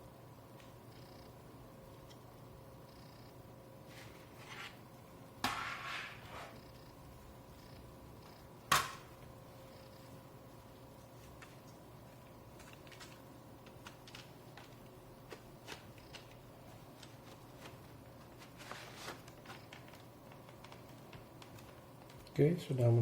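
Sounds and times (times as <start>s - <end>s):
faint steady hum: 0.0s - 23.0s.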